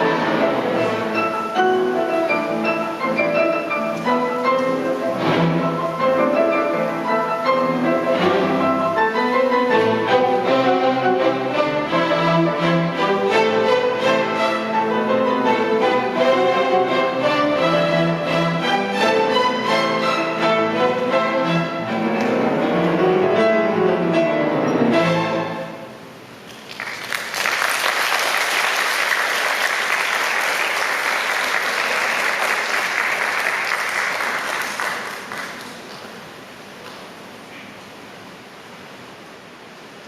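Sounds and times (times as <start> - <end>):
sweeping piano runs: 0.0 - 26.3
orchestra with strings and pianos: 0.0 - 40.0
audience applause: 26.5 - 36.4.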